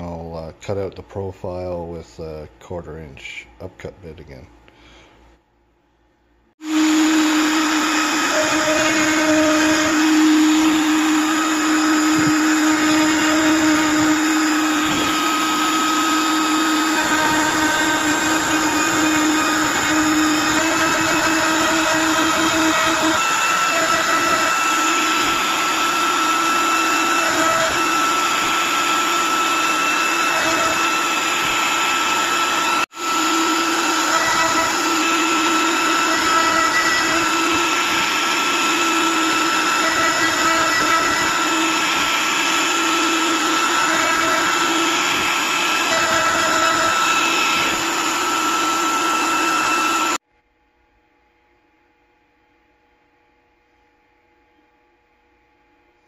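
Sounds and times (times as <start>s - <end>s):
cnc router spindle whine: 6.6s - 50.2s.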